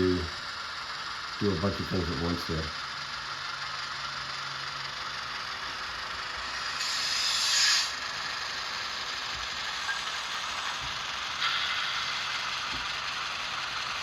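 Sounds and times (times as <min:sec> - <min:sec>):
model locomotive hiss from speaker: 0:00.0 - 0:14.0
air hiss burst: 0:06.6 - 0:08.0, 0:11.4 - 0:12.4.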